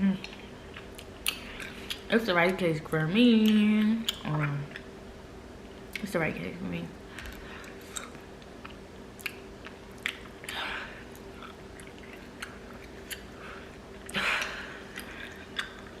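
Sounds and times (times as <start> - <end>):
faint steady hum: 0.0 - 16.0
chewing noodles: 7.3 - 14.2, 14.9 - 16.0.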